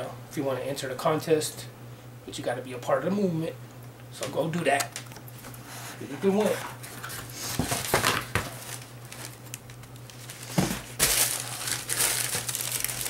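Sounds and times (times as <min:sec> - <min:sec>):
packaging crinkling and rustling: 0:06.3 - 0:13.0.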